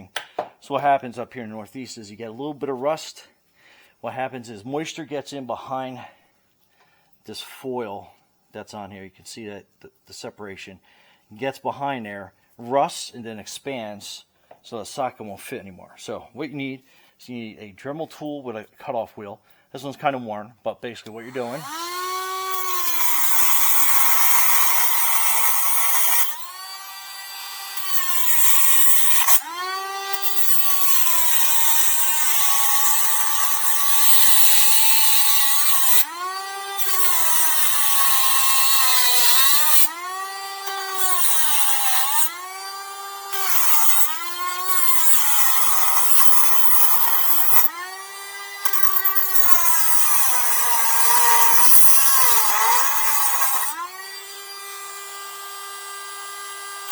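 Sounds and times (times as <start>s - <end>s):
cutoff wheel grinding metal: 21.0s - 56.9s
rotary tool motor whine: 21.2s - 56.9s.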